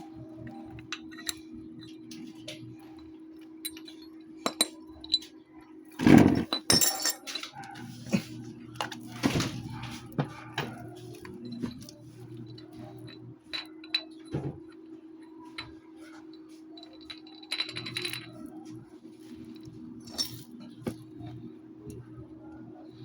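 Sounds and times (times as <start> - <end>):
metallic clicking and clinking: 0.4 - 5.3, 16.7 - 18.6.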